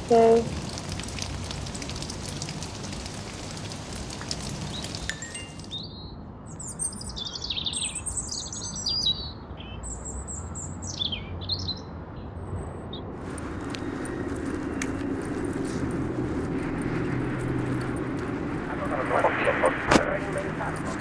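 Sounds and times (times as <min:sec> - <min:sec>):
rain hiss with faint crackles: 0:00.0 - 0:05.8, 0:13.2 - 0:21.0
steady low rumble: 0:13.2 - 0:21.0.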